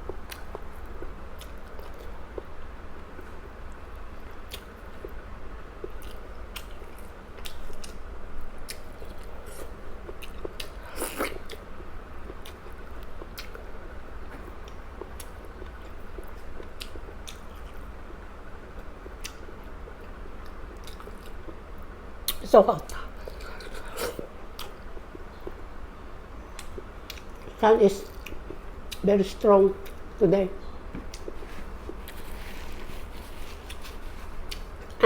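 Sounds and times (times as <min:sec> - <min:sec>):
steady low hum: 0:00.0 - 0:35.0
chewing with wet mouth clicks: 0:00.1 - 0:02.5, 0:04.3 - 0:05.2, 0:05.8 - 0:08.0, 0:08.6 - 0:13.7, 0:14.3 - 0:18.2, 0:18.8 - 0:25.7, 0:26.5 - 0:29.1, 0:29.8 - 0:30.1, 0:31.0 - 0:32.3, 0:33.6 - 0:35.0.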